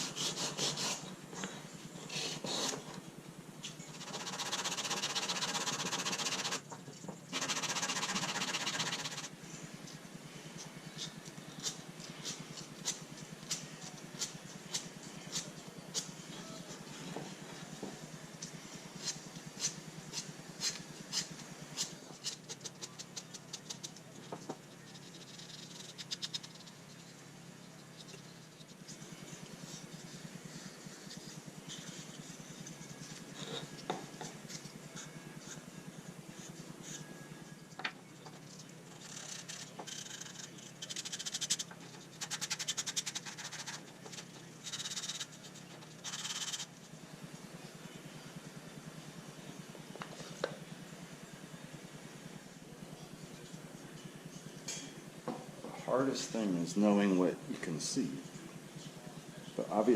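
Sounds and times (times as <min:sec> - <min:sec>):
sandpaper rubbing on wood: 0:00.0 - 0:01.1, 0:03.9 - 0:06.6, 0:07.3 - 0:09.3.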